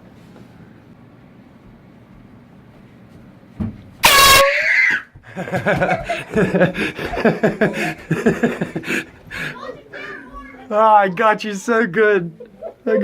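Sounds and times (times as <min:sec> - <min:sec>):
air horn blast: 0:04.0 - 0:04.6
laughter: 0:05.2 - 0:09.2, 0:12.4 - 0:13.0.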